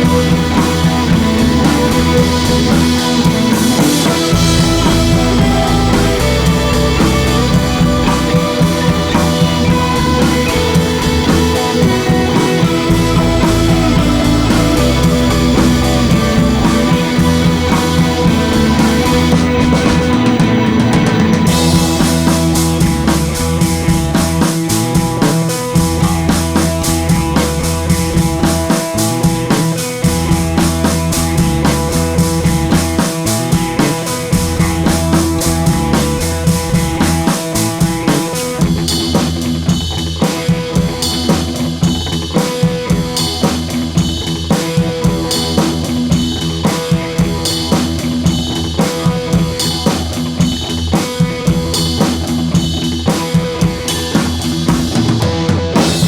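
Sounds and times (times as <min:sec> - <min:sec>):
background music: 0:00.0 - 0:26.2
drum kit beat: 0:00.0 - 0:56.0.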